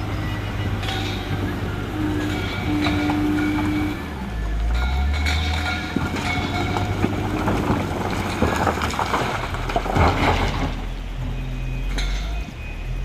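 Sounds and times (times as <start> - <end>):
rattling and clatter: 0.0 - 11.2
vehicle engine rumble: 0.0 - 13.0.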